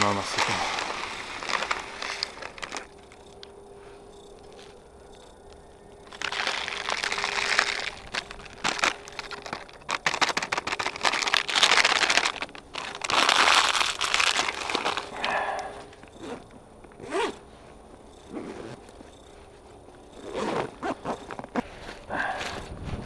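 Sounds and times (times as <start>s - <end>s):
rustling and crunching: 0.0s - 23.0s
sharp clicks and cracks: 5.5s - 15.1s.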